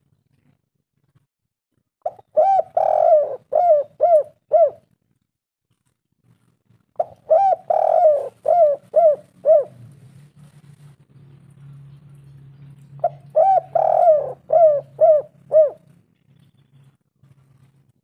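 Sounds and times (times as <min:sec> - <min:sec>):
dove cooing: 0:02.1 - 0:04.9, 0:07.0 - 0:09.9, 0:13.0 - 0:16.0.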